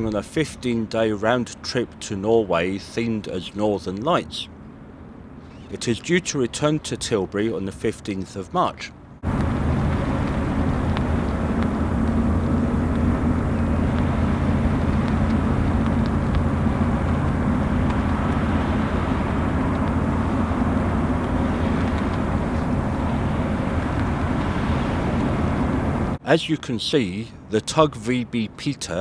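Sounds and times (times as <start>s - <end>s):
ship engines droning: 0.0s - 29.0s
heavy rain hiss: 9.2s - 26.2s.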